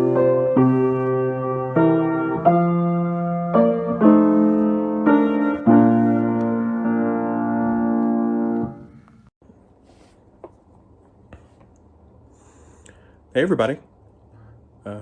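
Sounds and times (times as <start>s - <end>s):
piano playing slow chords: 0.0s - 9.3s.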